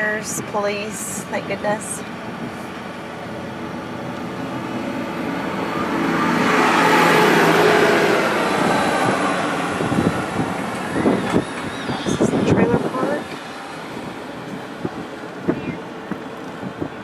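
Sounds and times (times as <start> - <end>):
aircraft flying over: 1.2 - 17.0.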